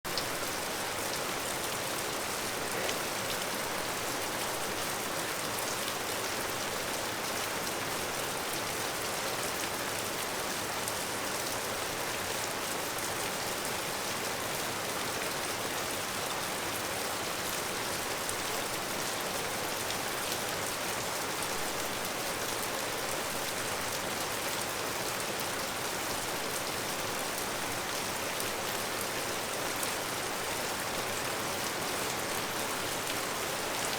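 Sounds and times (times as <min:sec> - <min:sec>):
heavy rain falling: 0:00.1 - 0:11.9.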